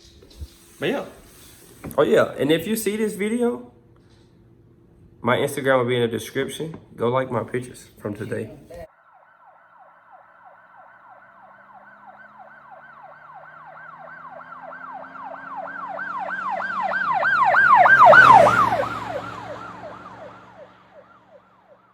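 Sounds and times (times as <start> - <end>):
emergency siren yelping: 8.9 - 21.9
vehicle engine: 10.3 - 21.9.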